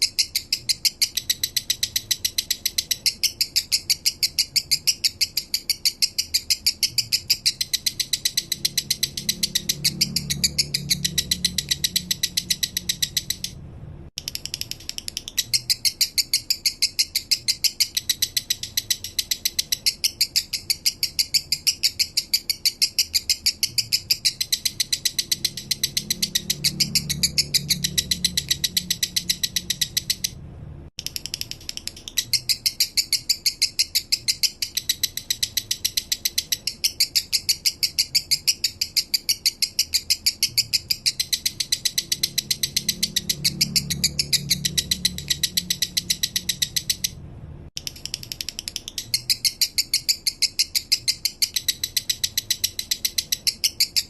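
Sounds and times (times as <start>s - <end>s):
lovebird chattering song: 0.0s - 13.6s, 14.2s - 30.4s, 31.0s - 47.2s, 47.8s - 54.0s.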